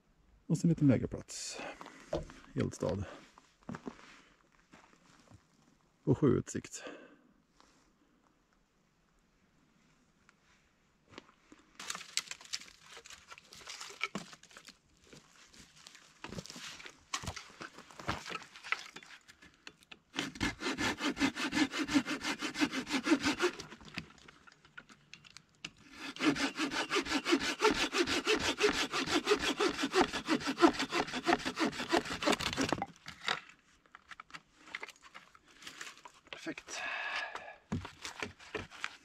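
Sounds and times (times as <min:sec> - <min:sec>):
hand saw cutting wood: 0:20.1 - 0:24.0, 0:25.9 - 0:32.8, 0:37.7 - 0:39.0.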